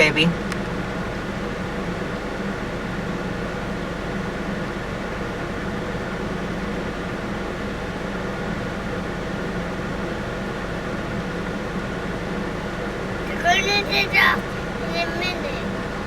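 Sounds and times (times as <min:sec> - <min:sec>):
engine idling: 0:10.9 - 0:16.0.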